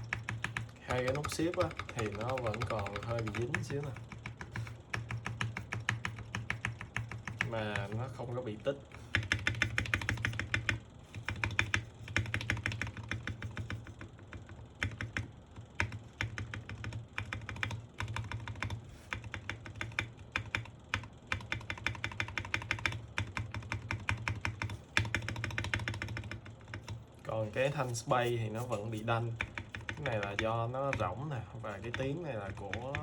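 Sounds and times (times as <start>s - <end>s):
mechanical keyboard typing: 0.0s - 33.0s.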